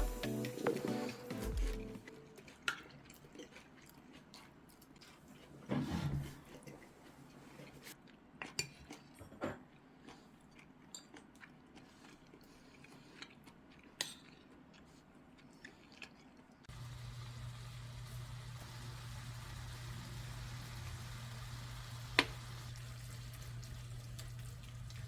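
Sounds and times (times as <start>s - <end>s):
quiet chewing: 0.2s - 5.7s, 6.4s - 16.7s, 23.4s - 25.0s.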